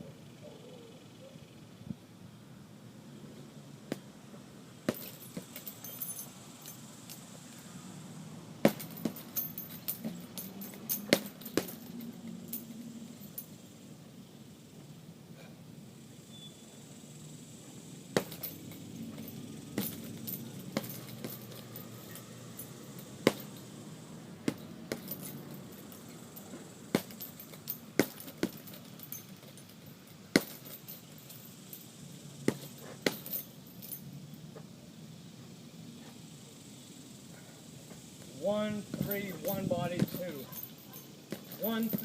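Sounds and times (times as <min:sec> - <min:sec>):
gloves punching heavy bag: 0:04.9 - 0:05.7, 0:08.6 - 0:11.8, 0:18.2 - 0:18.6, 0:19.2 - 0:22.2, 0:23.2 - 0:23.6, 0:24.5 - 0:25.3, 0:26.9 - 0:29.4, 0:30.3 - 0:30.8, 0:32.5 - 0:33.4, 0:41.3 - 0:42.0.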